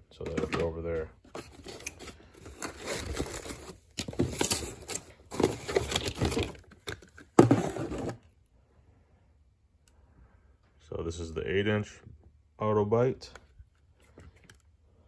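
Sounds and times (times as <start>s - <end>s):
rustling packaging: 0.2s - 8.2s.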